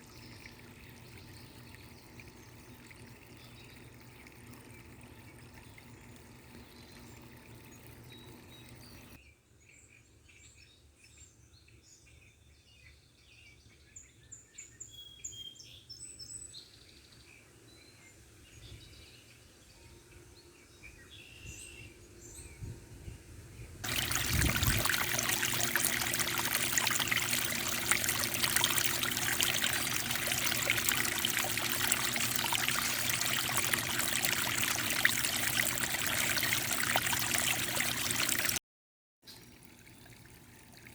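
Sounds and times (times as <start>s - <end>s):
small birds chirping: 23.8s - 38.6s.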